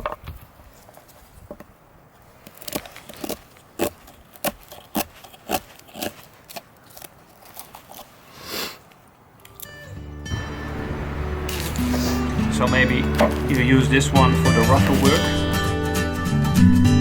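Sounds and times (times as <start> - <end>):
knife scraping wood: 2.4 - 8.9.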